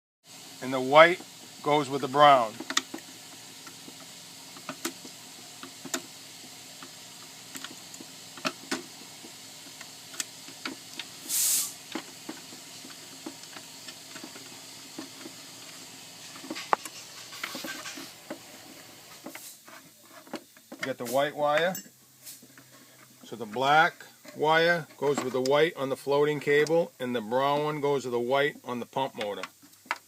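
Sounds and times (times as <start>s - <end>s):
short high hiss: 11.1s - 11.9s, 22.2s - 22.5s.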